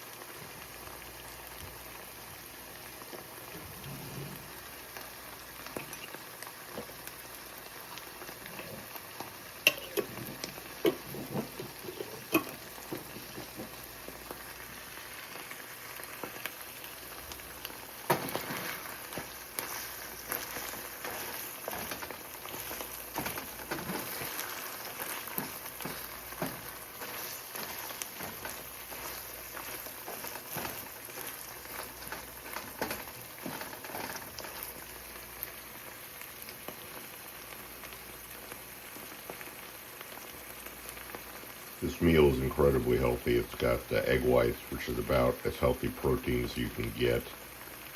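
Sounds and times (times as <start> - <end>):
food sizzling in a frying pan: 0.0 - 47.9.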